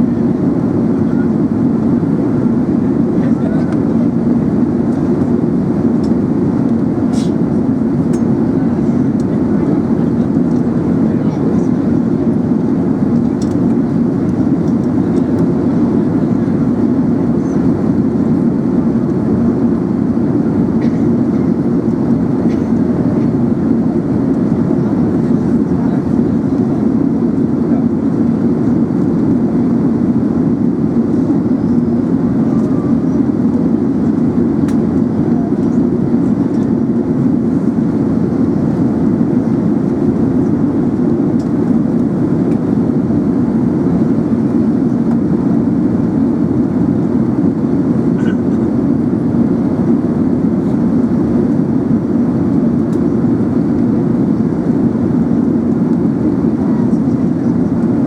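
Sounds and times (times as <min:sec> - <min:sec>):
airplane cabin noise: 0:00.0 - 0:58.0.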